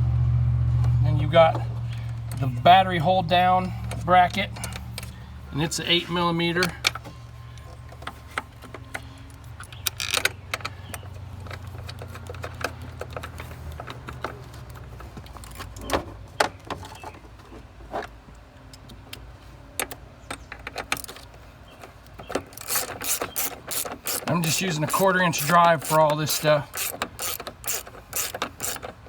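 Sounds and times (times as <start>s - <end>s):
low steady hum: 0.0s - 13.9s
metallic clinks of socket wrench: 22.6s - 28.9s.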